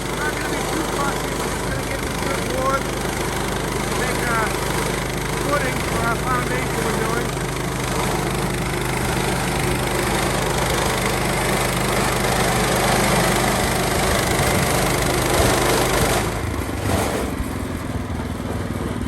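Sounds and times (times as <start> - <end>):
band saw blade sawing a log: 0.0 - 19.0
gas engine running: 0.0 - 19.0.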